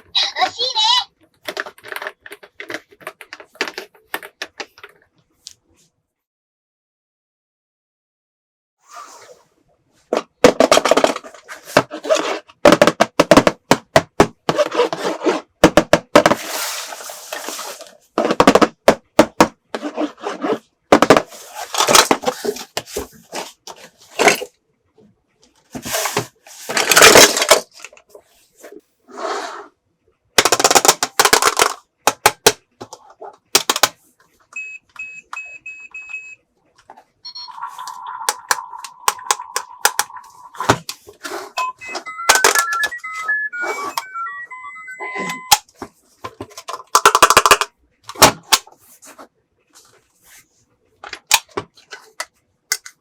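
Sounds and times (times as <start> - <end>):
plastic toy pieces clattering: 26.6 - 28.0, 30.4 - 32.5, 46.5 - 47.7.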